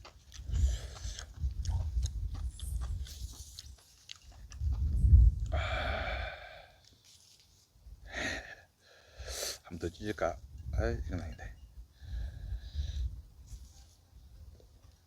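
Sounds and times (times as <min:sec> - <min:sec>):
wet chewing and biting: 0:00.0 - 0:05.6.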